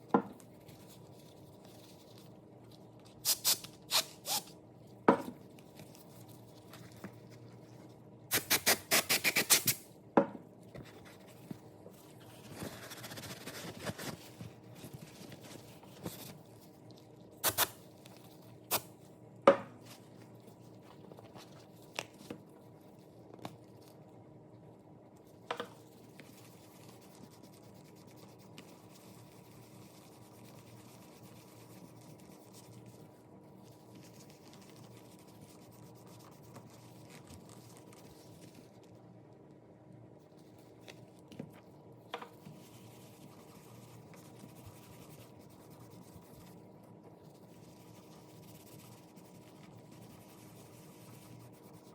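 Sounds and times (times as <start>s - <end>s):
low room hum: 0.0s - 51.9s.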